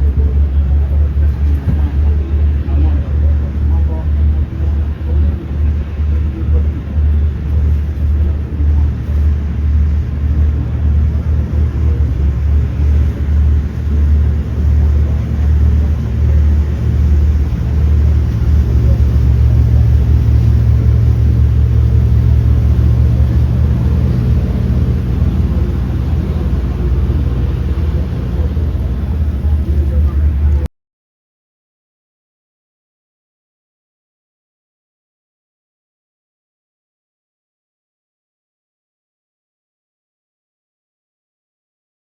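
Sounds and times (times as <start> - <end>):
motor vehicle running: 0.0 - 30.7.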